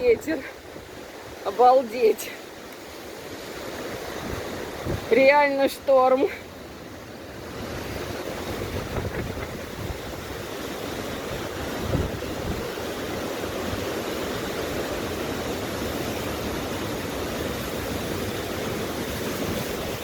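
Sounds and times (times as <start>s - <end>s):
strong wind buffeting microphone: 3.4s - 5.4s, 7.0s - 20.0s.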